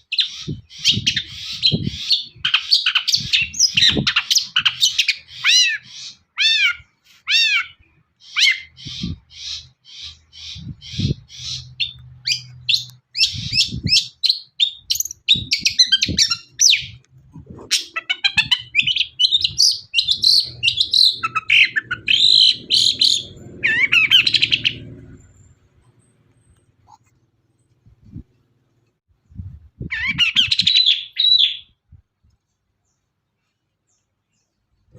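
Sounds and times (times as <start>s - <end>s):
bird singing chirping song: 7.5s - 26.7s.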